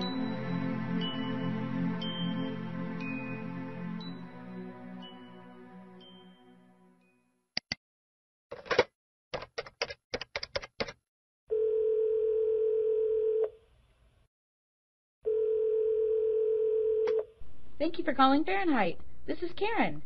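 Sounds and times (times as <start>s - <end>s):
telephone ringback tone: 11.5s - 13.5s, 15.3s - 17.1s.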